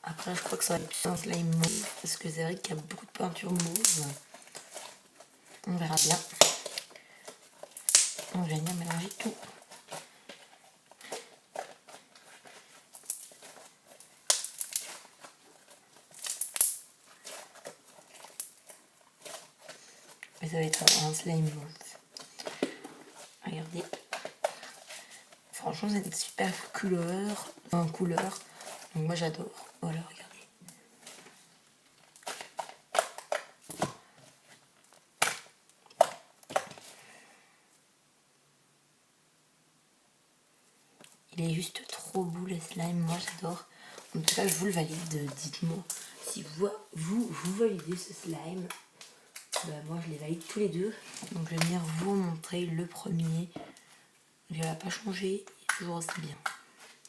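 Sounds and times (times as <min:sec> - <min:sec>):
slime squelching and crackling: 0:00.0 - 0:37.2, 0:41.0 - 0:53.9, 0:54.5 - 0:57.0
slime squishing and popping: 0:03.3 - 0:05.0, 0:05.8 - 0:06.9, 0:07.7 - 0:10.0, 0:12.9 - 0:15.3, 0:16.1 - 0:19.5, 0:20.2 - 0:21.2.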